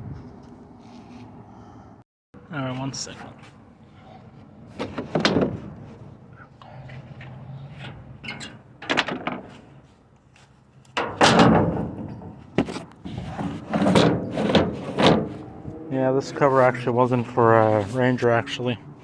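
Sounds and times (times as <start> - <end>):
clunks and rattling handling: 4.7 - 6.1, 6.9 - 9.9, 10.8 - 15.7.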